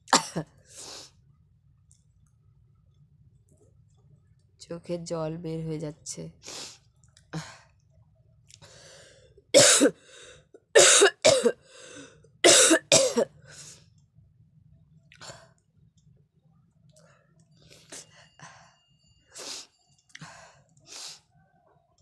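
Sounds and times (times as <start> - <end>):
person coughing hard: 0.1 - 0.5, 9.6 - 10.0, 10.7 - 11.6, 12.4 - 13.3
breathy gasps: 10.0 - 10.6, 11.6 - 12.3.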